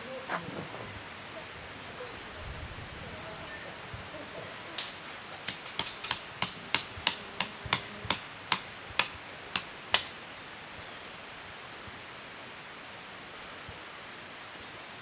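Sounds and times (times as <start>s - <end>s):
sharp metallic hammer taps: 4.8s - 10.2s.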